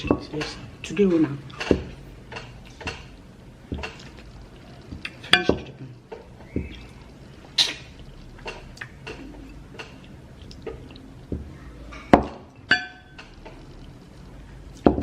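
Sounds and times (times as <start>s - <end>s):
dishes clinking and knocking: 0.0s - 0.6s, 1.5s - 4.2s, 4.8s - 6.8s, 10.7s - 13.6s.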